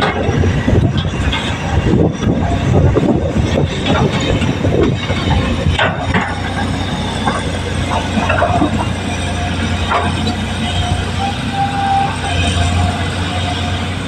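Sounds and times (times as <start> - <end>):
knocks and clatter: 0.0 - 10.9
diesel machinery humming: 0.0 - 14.0.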